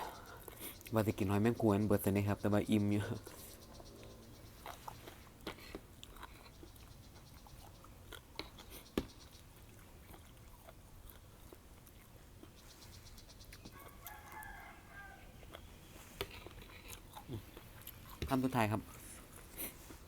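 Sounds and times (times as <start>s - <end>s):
chewing clicks: 3.8s - 14.6s, 15.4s - 18.3s
rooster crowing: 13.7s - 15.5s.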